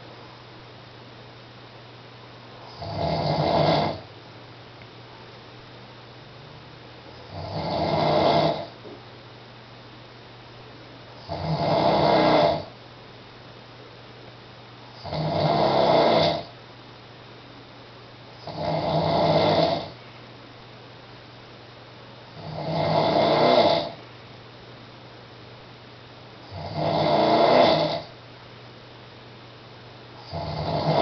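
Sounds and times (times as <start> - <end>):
steady low hum: 0.0 - 31.0
man snoring: 2.7 - 4.1, 7.2 - 8.7, 11.2 - 12.7, 15.0 - 16.5, 18.4 - 20.0, 22.4 - 24.0, 26.5 - 28.1, 30.2 - 31.0.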